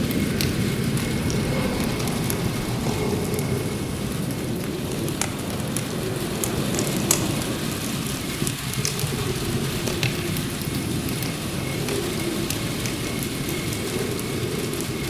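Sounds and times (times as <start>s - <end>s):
log fire crackling: 0.0s - 15.0s
steady rain: 0.0s - 15.0s.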